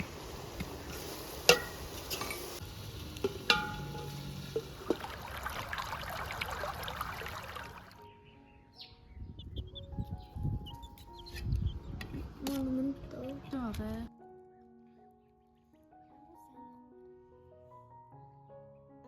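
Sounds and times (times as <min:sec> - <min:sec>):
food sizzling: 0:00.0 - 0:07.9
metal utensil clinking on pot: 0:03.2 - 0:04.7.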